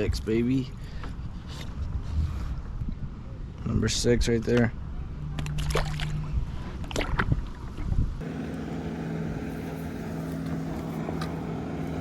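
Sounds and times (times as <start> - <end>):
boat motor humming: 8.2 - 12.0.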